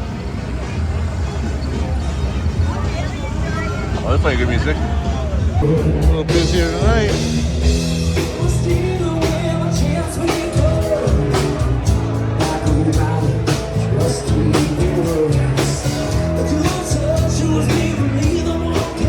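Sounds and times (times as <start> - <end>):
bass line: 0.0 - 19.0
person singing: 8.2 - 19.0.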